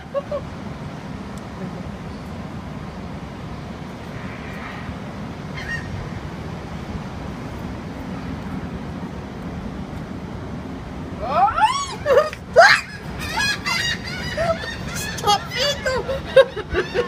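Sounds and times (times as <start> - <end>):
low rumble: 3.6 - 8.1
seagull call: 5.5 - 6.2, 11.2 - 17.0.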